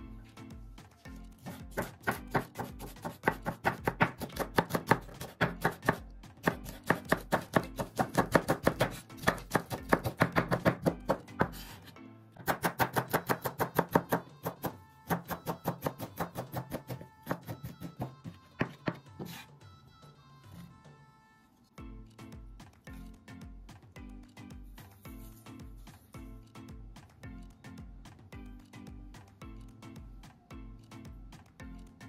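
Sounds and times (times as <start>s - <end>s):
knife chopping on cutting board: 1.4s - 11.8s, 12.4s - 19.5s.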